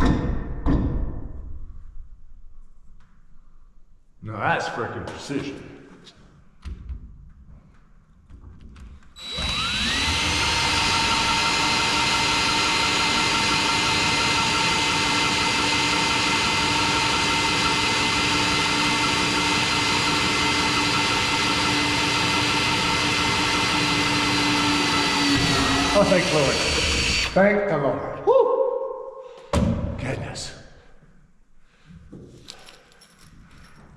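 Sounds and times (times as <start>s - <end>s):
power drill whine: 9.2s - 27.4s.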